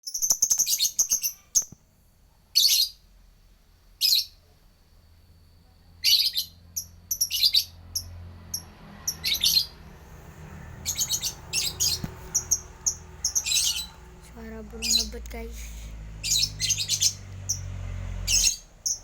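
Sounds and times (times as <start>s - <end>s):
bird rapid high chirping: 0.1s - 1.7s, 6.0s - 9.9s, 10.5s - 19.0s.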